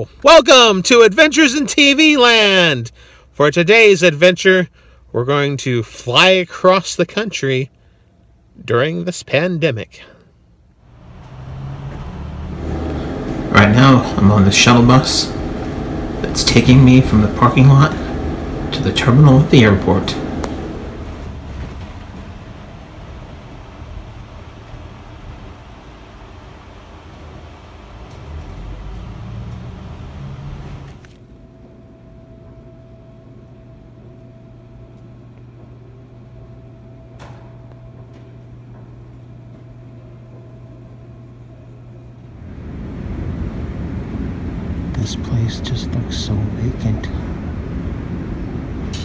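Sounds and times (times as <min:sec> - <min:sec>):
low hum: 0:10.1 - 0:49.0
bus road-noise rumble: 0:10.5 - 0:31.5, 0:42.0 - 0:49.0.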